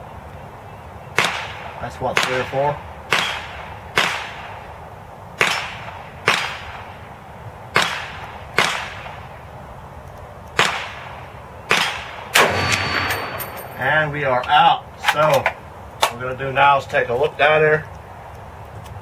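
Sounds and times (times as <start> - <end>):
gunshots with echo: 1.2 - 4.6, 5.4 - 6.9, 7.7 - 9.3, 10.6 - 13.8.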